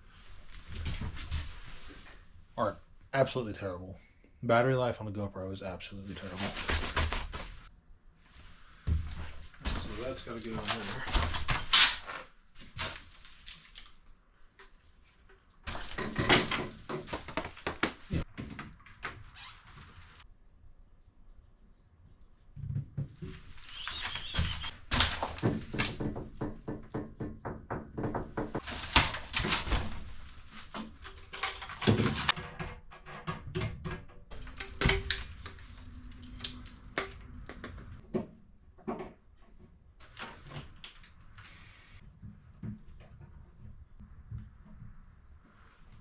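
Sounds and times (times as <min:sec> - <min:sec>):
objects clicking and knocking: 0:28.0 - 0:41.1.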